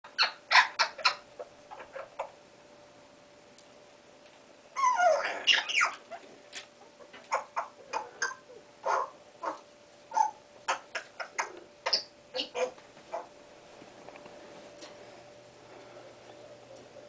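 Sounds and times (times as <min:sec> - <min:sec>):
parrot squawky glides: 0:04.8 - 0:06.3.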